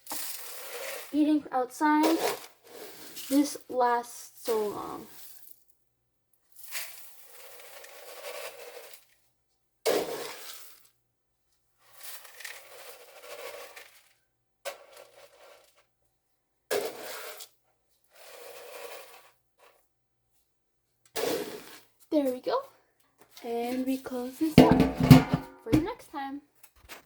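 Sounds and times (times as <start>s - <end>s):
scoop digging into grain feed: 0.0s - 1.1s, 6.6s - 9.1s, 9.9s - 10.9s, 11.9s - 14.1s, 14.7s - 15.8s, 16.7s - 17.6s, 18.2s - 19.8s
grain pouring into bucket: 0.0s - 1.2s, 6.6s - 9.1s, 9.9s - 10.9s, 11.9s - 14.1s, 18.2s - 19.4s.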